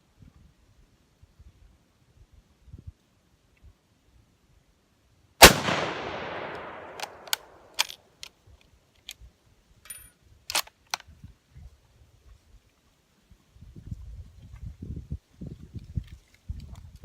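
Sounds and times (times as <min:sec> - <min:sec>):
rifle shot with echo: 0:05.4 - 0:07.8
rifle bolt metallic clicks: 0:05.4 - 0:09.2, 0:09.9 - 0:11.1.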